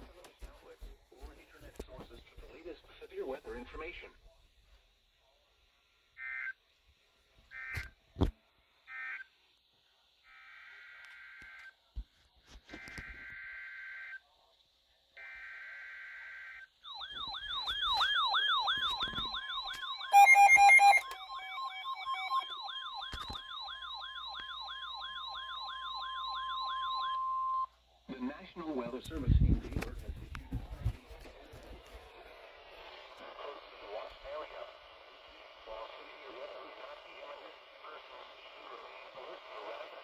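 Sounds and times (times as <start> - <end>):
steady alarm tone: 16.9 - 27.7
warbling siren-like alarm: 16.9 - 27.7
screechy digital data chirps: 17.0 - 27.6
loud beeping burst: 17.0 - 27.7.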